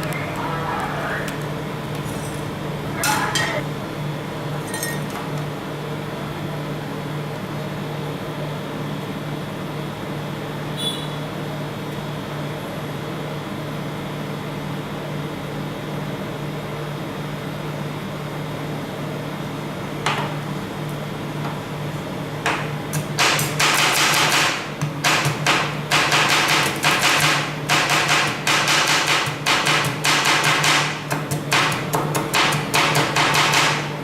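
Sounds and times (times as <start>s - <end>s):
machine hum: 0.0s - 6.8s.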